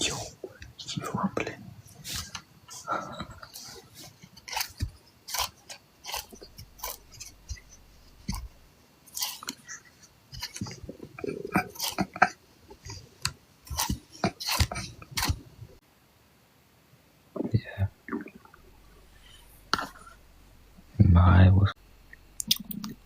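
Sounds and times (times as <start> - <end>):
stomach gurgling: 1.2 - 15.8, 17.4 - 20.2, 22.1 - 23.0.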